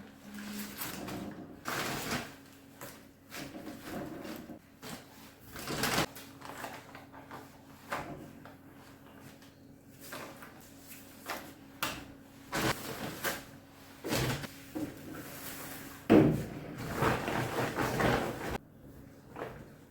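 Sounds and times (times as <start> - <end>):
scrapes and rustles: 12.6 - 18.6.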